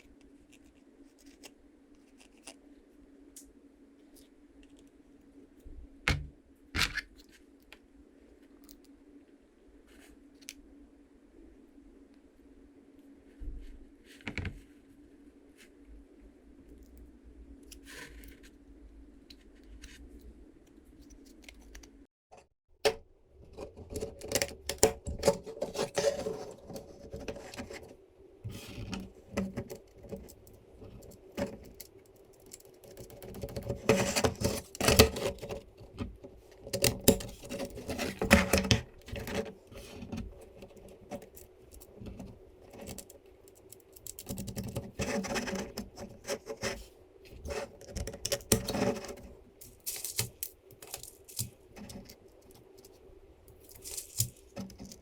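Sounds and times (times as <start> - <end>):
faint steady hum: 0.0 - 22.1, 22.8 - 55.0
plastic parts clicking and rattling: 28.8 - 46.2, 47.5 - 55.0.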